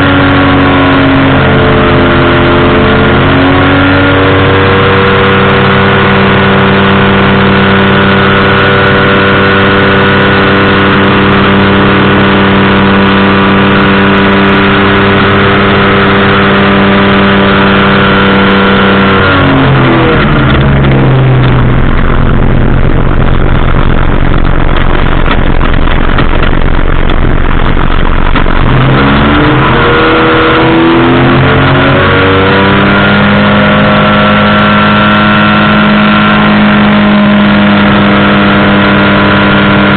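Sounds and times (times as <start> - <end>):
powered parachute engine and propeller: 0.0 - 39.9.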